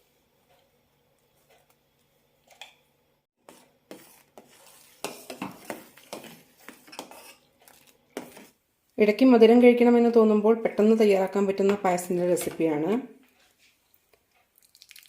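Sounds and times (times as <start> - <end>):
metal spoon scraping a pan: 3.4 - 8.6.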